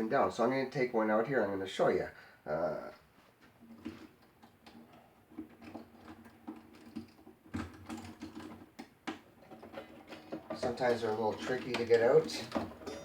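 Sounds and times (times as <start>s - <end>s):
plastic keyboard keys clicking: 5.6s - 9.9s.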